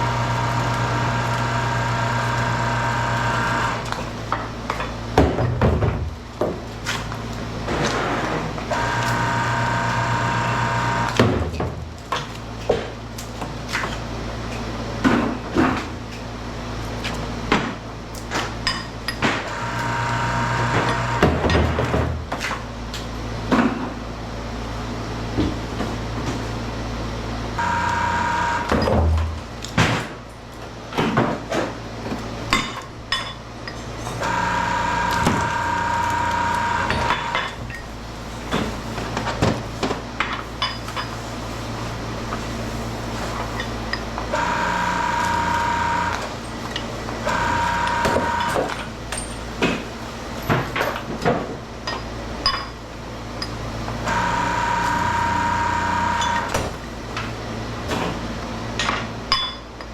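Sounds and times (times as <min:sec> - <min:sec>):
machine whine: 0:00.0 - 0:04.2, 0:07.7 - 0:11.2, 0:19.5 - 0:21.5, 0:27.6 - 0:29.0, 0:34.0 - 0:37.6, 0:44.2 - 0:48.8, 0:53.9 - 0:56.6
machine hum: 0:00.0 - 0:04.6, 0:07.5 - 0:11.2, 0:19.4 - 0:21.5, 0:26.0 - 0:29.7, 0:33.9 - 0:38.4, 0:41.7 - 0:48.8, 0:53.7 - 0:57.2.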